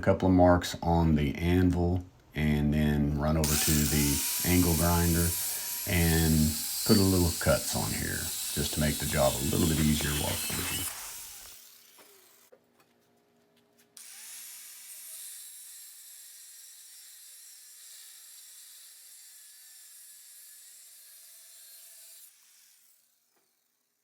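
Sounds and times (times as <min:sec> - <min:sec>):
angle grinder grinding steel: 0:03.4 - 0:12.5, 0:14.0 - 0:23.6.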